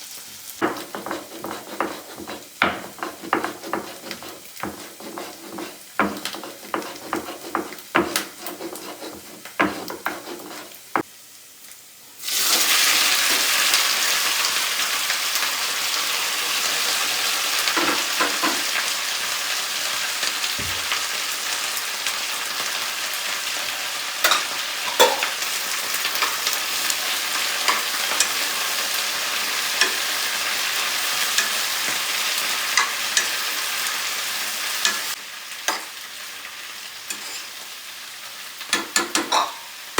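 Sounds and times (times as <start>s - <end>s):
food sizzling in a pan: 0.0s - 39.9s
utensil clinking while stirring: 0.6s - 10.7s
kitchenware clicks and knocks: 24.3s - 25.3s, 38.7s - 39.7s.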